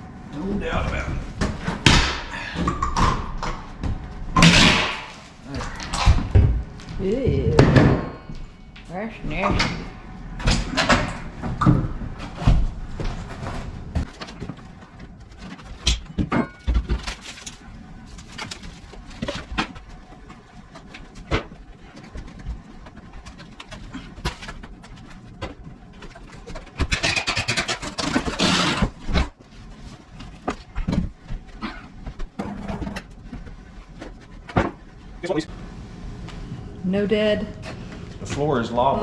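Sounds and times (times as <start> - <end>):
debris knocking and scraping: 10.4 - 35.4.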